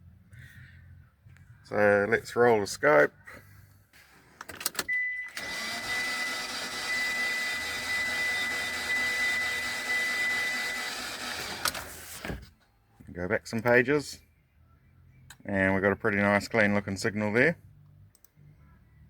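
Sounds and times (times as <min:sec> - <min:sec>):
engine cranking on starter motor: 0:05.3 - 0:12.5
clicks: 0:18.1 - 0:18.4.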